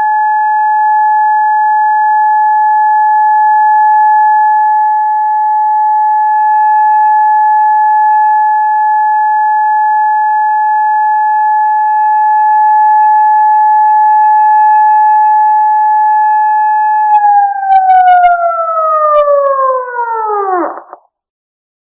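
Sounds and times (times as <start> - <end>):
siren winding down: 17.1 - 21.0
crackles: 17.2 - 21.0.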